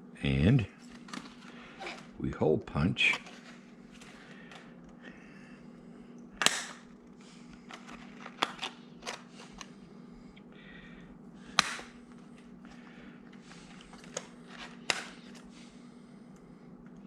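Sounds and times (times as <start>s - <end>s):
faint steady hum: 0.0s - 17.0s
clicks and handling: 7.6s - 9.7s.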